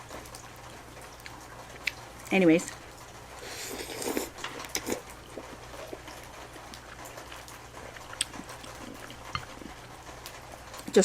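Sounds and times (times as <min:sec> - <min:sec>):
quiet chewing: 0:00.1 - 0:11.0.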